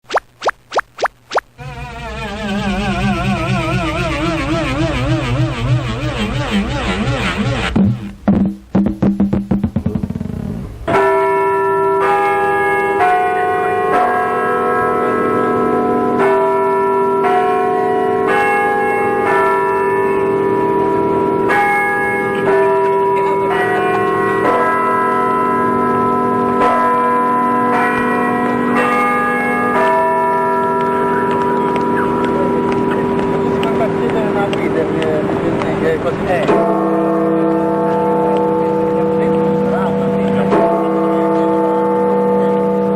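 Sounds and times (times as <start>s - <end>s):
comic warbling tone and pulses: 0.0s - 6.9s
church bells ringing: 10.9s - 42.9s.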